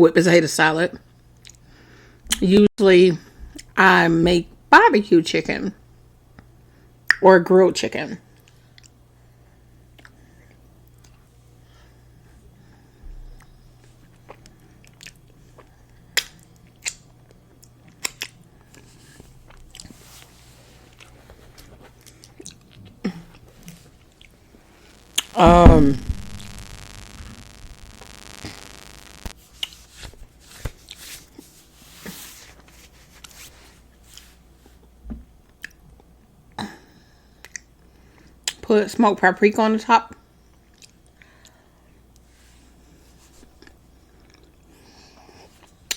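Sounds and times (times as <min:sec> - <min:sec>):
chewing and crunching: 0:14.0 - 0:20.0, 0:20.9 - 0:24.3.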